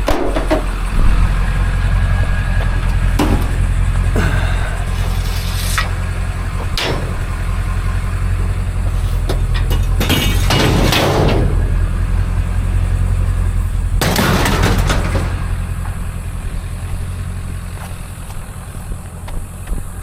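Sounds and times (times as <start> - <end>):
vehicle engine droning: 0.0 - 20.0
whooshing noise: 0.7 - 3.9.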